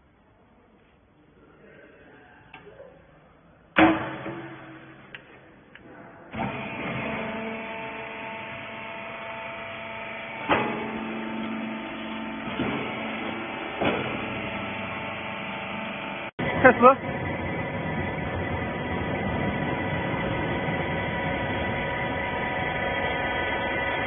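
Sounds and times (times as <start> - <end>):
baling machine motor hum: 6.3 - 24.0.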